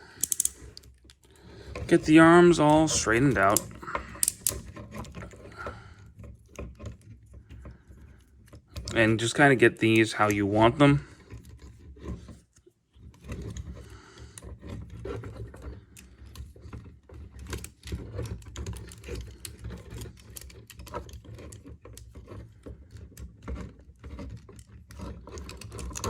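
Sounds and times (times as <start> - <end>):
plastic toy parts clicking: 0.1 - 1.3, 2.0 - 5.4, 17.4 - 22.2.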